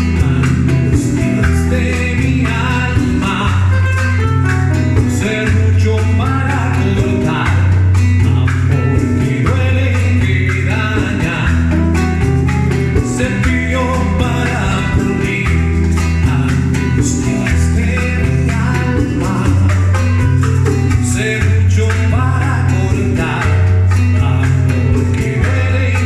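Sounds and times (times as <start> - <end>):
bass line: 0.0 - 26.0
latin band music: 0.0 - 26.0
plucked guitar: 0.0 - 26.0.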